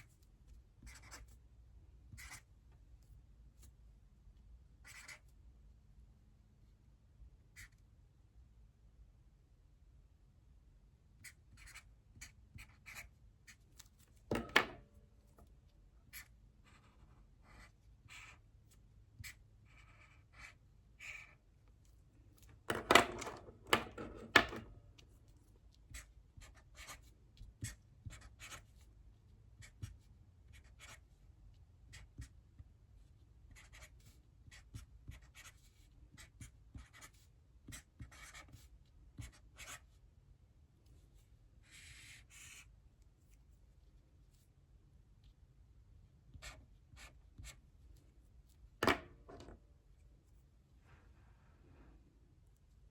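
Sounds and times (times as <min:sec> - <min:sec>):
pen scratching on paper: 0:00.8 - 0:01.4, 0:02.2 - 0:02.5, 0:04.8 - 0:05.2, 0:11.2 - 0:13.6, 0:16.1 - 0:18.4, 0:19.2 - 0:21.4, 0:25.9 - 0:28.8, 0:29.6 - 0:31.1, 0:33.5 - 0:39.9, 0:41.6 - 0:42.7.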